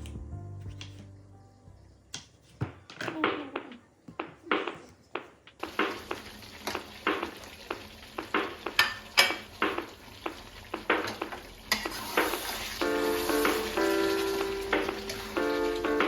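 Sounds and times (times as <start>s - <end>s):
food sizzling in a pan: 5.6s - 16.0s
spatula scraping pan: 10.8s - 12.8s.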